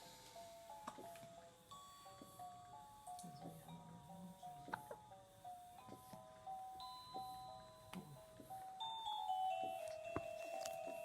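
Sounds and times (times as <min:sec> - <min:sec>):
chime-like electronic melody: 0:04.6 - 0:11.0.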